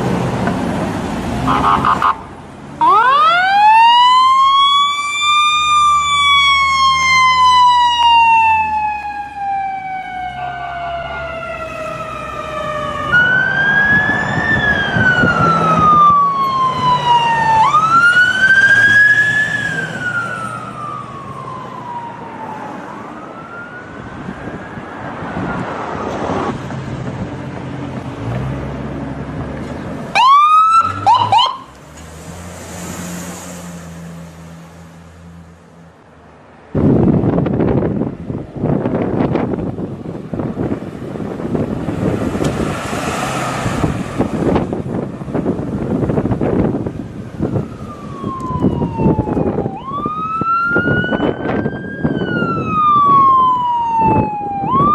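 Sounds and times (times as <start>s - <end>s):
low vehicle rumble: 0.0s - 54.9s
ambulance siren wailing: 1.5s - 2.2s, 2.8s - 26.6s, 30.1s - 31.8s, 43.7s - 54.9s.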